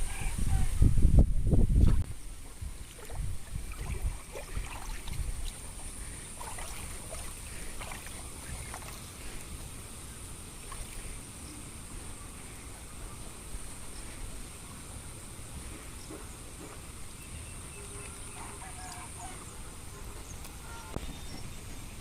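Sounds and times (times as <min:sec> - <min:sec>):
water sloshing and splashing: 0:01.8 - 0:11.4, 0:16.1 - 0:19.6
steady high hiss: 0:05.2 - 0:22.0.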